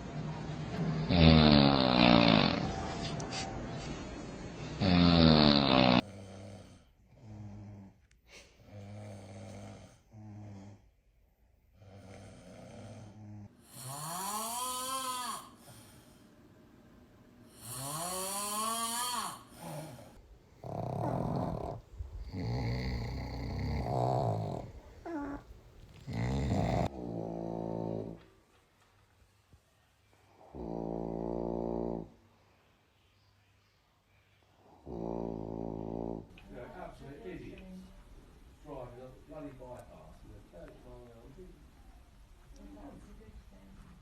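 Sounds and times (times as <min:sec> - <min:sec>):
person snoring: 0:01.1 - 0:02.7, 0:04.8 - 0:08.0, 0:11.8 - 0:16.0, 0:17.5 - 0:25.4, 0:26.0 - 0:28.2, 0:30.4 - 0:32.1, 0:34.7 - 0:36.3.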